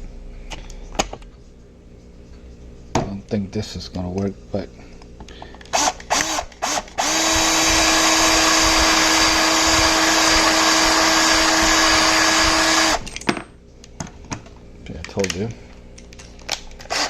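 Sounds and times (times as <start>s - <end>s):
electric drill running: 5.7s - 13.1s.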